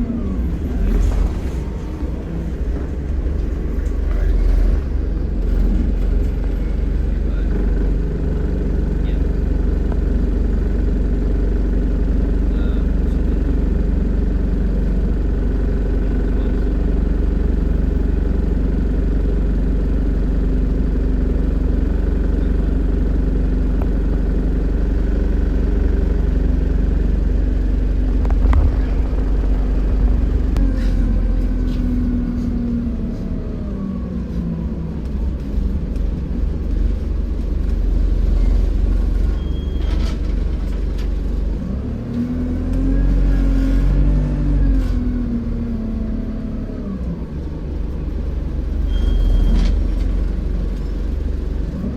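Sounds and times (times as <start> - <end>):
bus engine and road noise: 0.0 - 51.9
pitched hum: 23.7 - 32.6.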